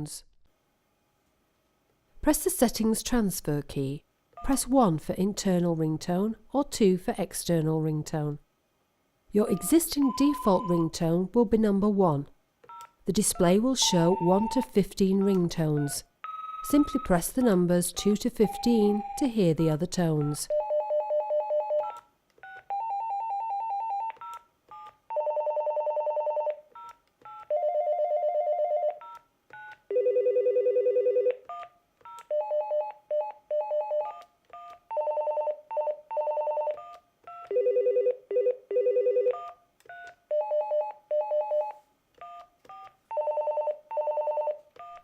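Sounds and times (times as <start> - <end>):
electronic phone ringtones: 16.2 - 17.1, 20.5 - 45.0.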